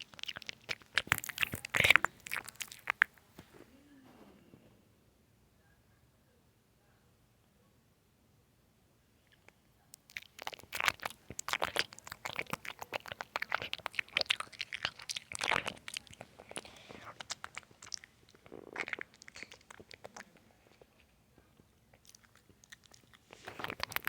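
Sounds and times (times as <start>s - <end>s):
gum chewing with wet smacks: 0.0s - 3.4s, 9.3s - 24.0s.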